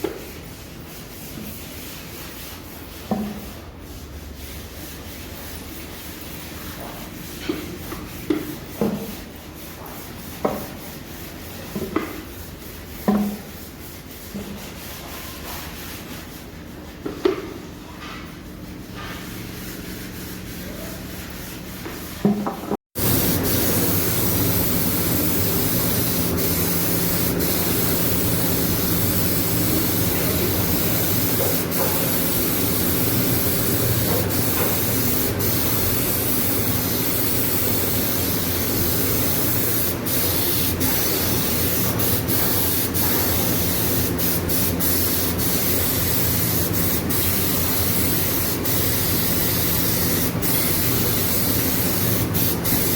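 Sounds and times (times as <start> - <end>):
spraying hiss: 23.0 - 52.9.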